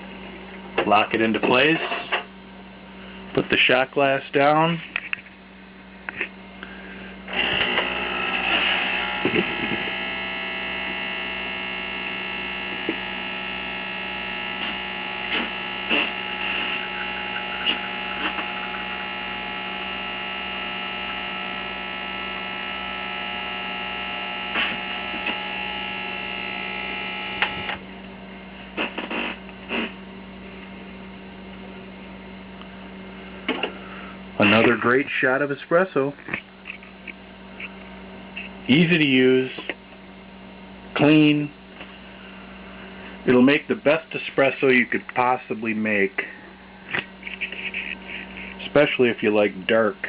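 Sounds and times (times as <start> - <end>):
espresso machine pump humming: 6.6 - 27.8.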